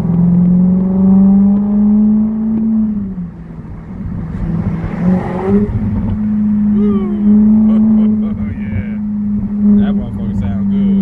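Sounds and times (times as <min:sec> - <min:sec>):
car engine accelerating: 0:00.0 - 0:11.0.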